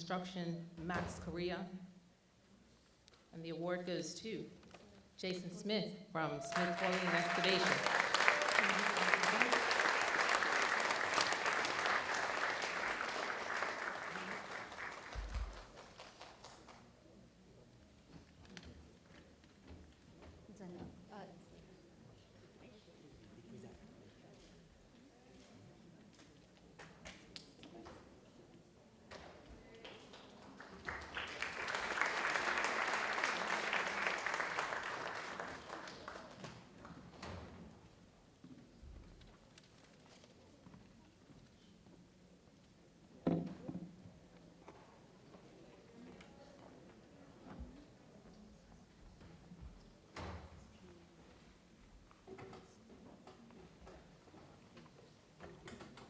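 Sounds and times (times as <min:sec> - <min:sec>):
audience applauding: 0:06.4 - 0:16.6, 0:30.5 - 0:36.6.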